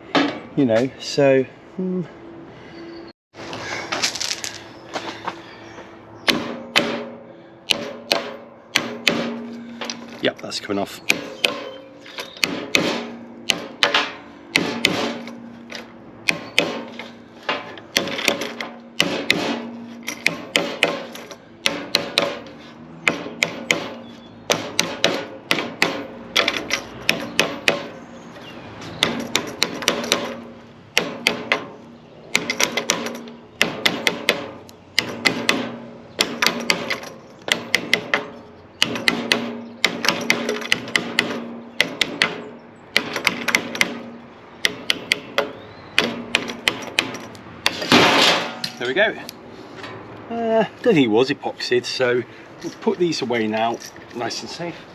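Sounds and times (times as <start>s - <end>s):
hammer striking a fitting: 6.3s - 10.0s, 11.1s - 28.0s, 29.0s - 48.8s.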